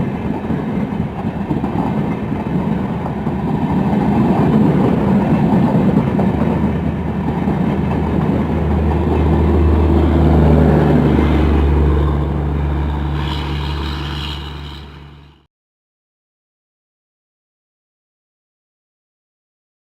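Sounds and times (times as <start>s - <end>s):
diesel locomotive engine drone: 0.0s - 15.5s
wheels rumbling on rails: 0.0s - 15.5s
high whine: 11.0s - 15.5s.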